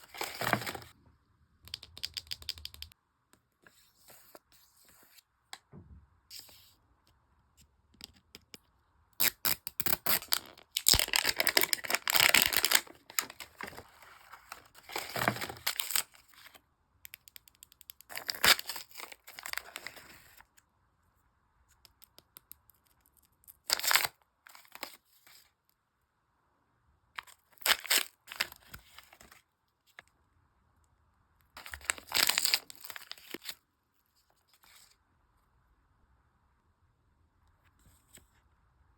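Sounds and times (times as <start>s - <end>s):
plastic packaging tearing and crinkling: 9.2s - 16.2s, 18.1s - 20.0s, 23.5s - 25.0s, 27.6s - 29.0s, 31.6s - 33.6s.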